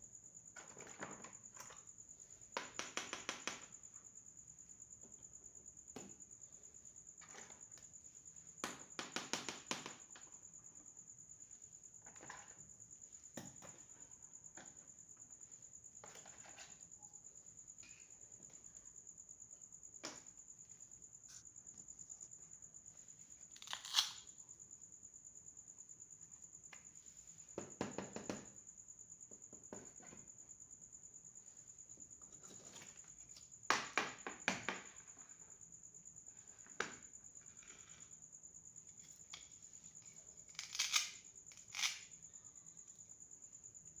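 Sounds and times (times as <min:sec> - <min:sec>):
plastic toy pieces clicking: 0:40.5 - 0:42.1.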